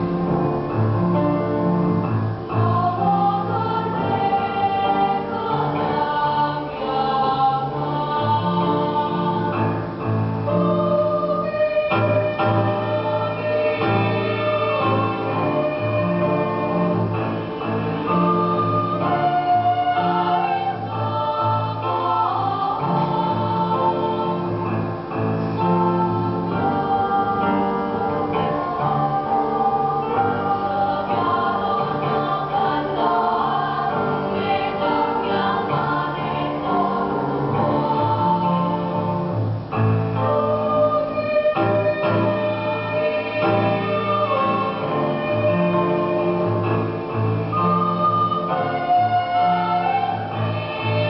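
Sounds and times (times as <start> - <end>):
choir singing sustained chords: 0.0 - 51.0.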